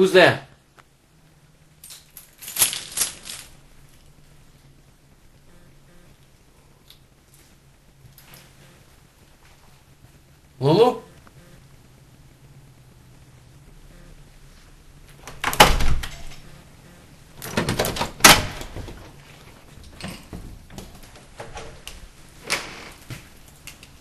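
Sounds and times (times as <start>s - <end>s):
door knocks and rattles: 15.4s - 16.2s, 17.4s - 19.2s.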